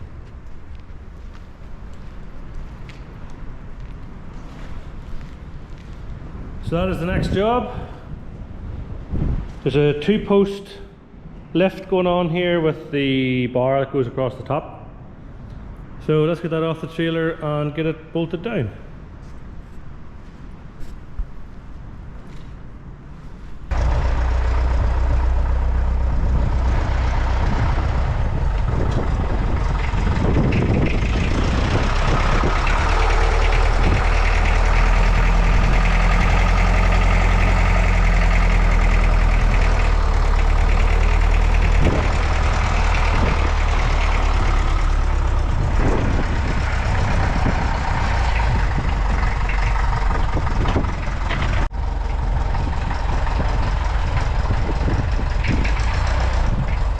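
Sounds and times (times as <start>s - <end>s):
heavy machine engine running: 23.7s - 56.9s
sharp knocks and clanks: 26.5s - 56.9s.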